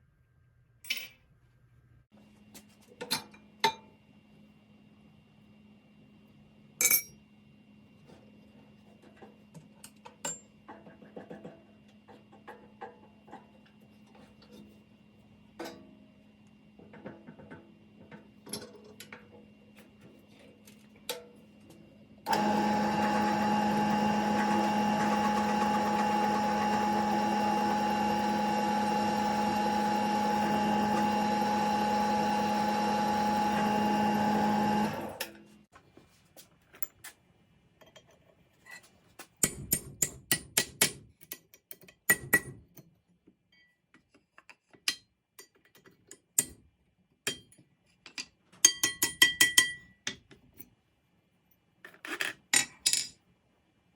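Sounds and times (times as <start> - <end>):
electric power tool motor humming: 22.3 - 35.2.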